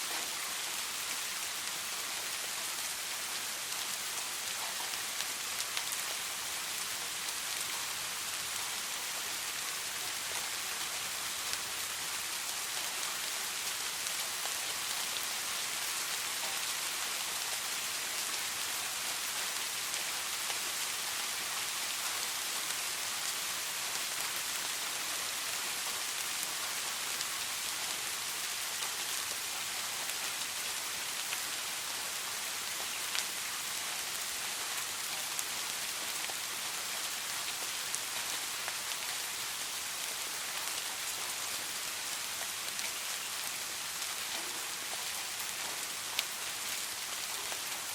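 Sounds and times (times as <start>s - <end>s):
soft rain falling: 0.0s - 47.9s.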